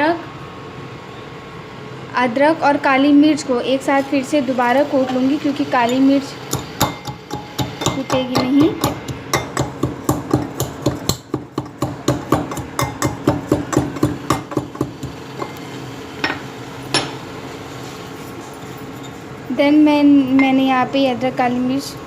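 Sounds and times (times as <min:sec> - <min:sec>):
pestle pounding in a mortar: 0:06.5 - 0:15.6.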